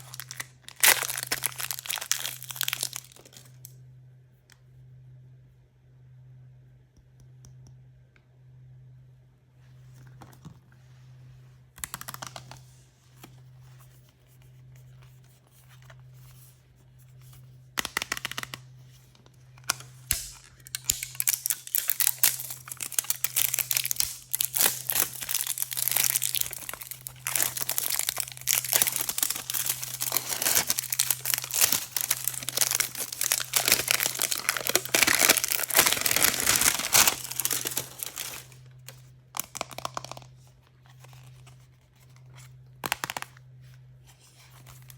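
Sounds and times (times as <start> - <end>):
packaging tearing and crinkling: 0.0 - 3.6, 20.1 - 40.3.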